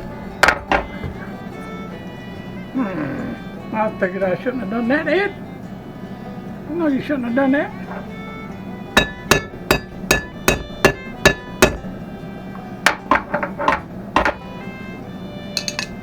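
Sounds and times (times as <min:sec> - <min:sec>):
hammer striking metal: 0:00.0 - 0:01.3, 0:09.0 - 0:12.1, 0:12.9 - 0:14.7, 0:15.6 - 0:16.0.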